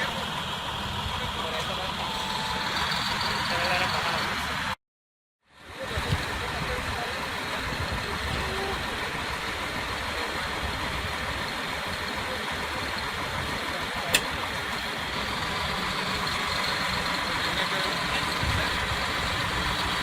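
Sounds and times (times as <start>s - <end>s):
heavy machinery diesel engine: 0.0s - 4.8s, 5.5s - 20.0s
sharp click: 14.1s - 14.4s.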